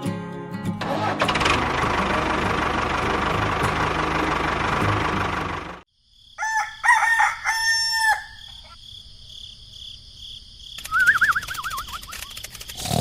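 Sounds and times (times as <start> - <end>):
motor running: 0.8 - 5.8
rooster crowing: 6.4 - 8.8
fast clicking: 10.8 - 13.0
warbling whistle: 10.9 - 12.2.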